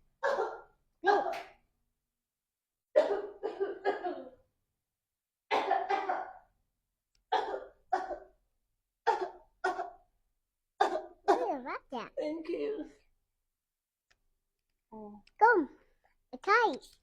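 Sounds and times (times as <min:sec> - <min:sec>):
man coughing: 0:03.0 - 0:04.4, 0:05.5 - 0:06.4, 0:07.3 - 0:08.3, 0:09.1 - 0:10.0.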